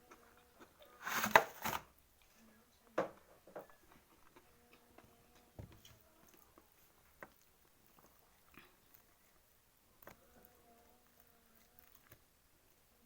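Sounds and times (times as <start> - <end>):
person chewing: 3.9 - 12.3.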